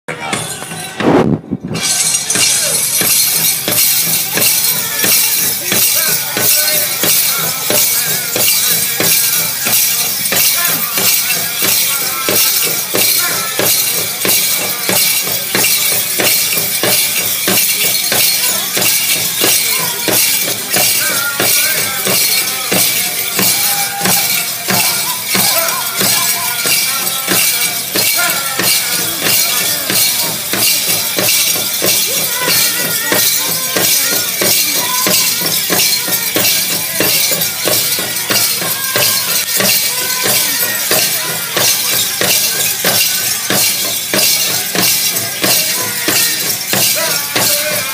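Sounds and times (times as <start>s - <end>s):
high-pitched group singing: 0.1s - 47.9s
jingling metal bells: 0.1s - 47.9s
fast beat on big drum: 1.0s - 47.9s.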